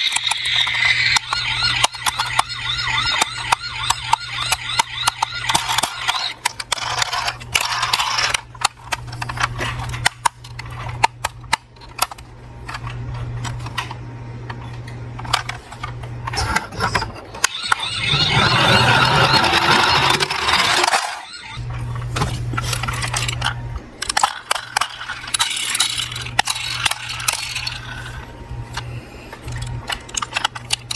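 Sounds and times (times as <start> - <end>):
toy cars clattering: 0.0 - 21.6, 22.2 - 30.9
steady low hum: 0.0 - 30.9.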